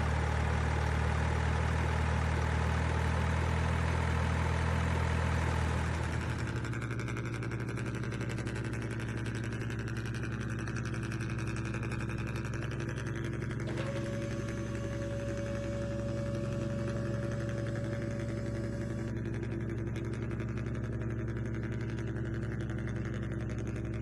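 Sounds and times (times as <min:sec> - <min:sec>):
model vehicle engine running: 0:03.2 - 0:24.0.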